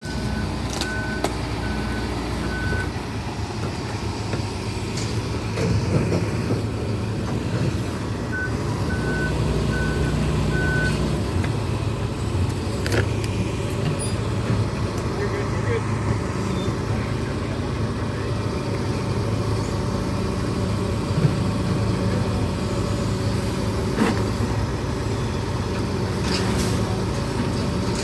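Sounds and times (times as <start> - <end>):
reversing alarm beeping: 0.0 - 2.9, 8.3 - 11.0
heavy machinery engine running: 0.0 - 28.0.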